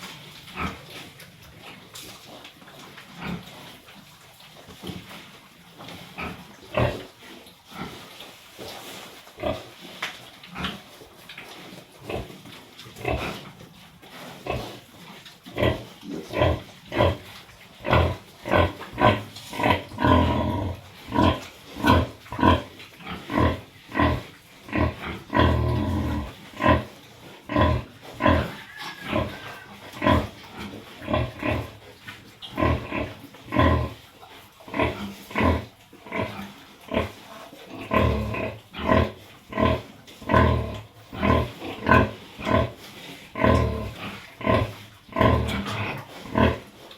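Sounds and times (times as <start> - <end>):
pig grunting: 15.5 - 31.8, 32.5 - 34.0, 34.6 - 46.8.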